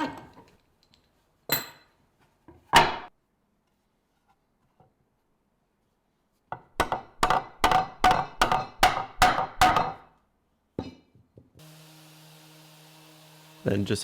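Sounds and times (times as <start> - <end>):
mallet striking chisel into wood: 6.8 - 10.0.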